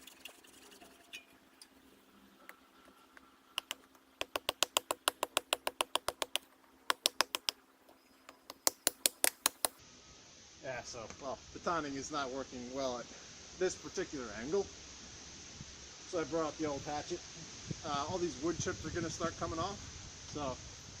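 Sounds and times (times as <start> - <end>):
wooden baton knocking knife spine: 3.6 - 7.5, 8.3 - 9.8.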